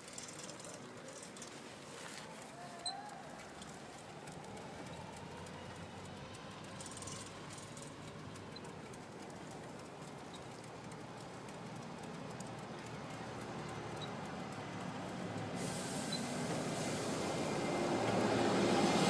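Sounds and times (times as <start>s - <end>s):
faint outdoor background noise: 0.0s - 19.0s
footsteps on woodland path: 1.2s - 4.8s.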